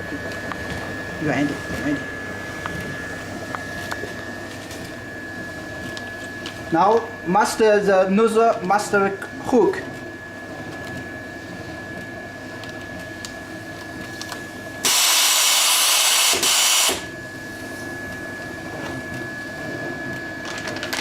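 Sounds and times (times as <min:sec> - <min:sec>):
motor hum with high whine: 0:00.0 - 0:21.0
compressed gas hissing: 0:14.8 - 0:17.0.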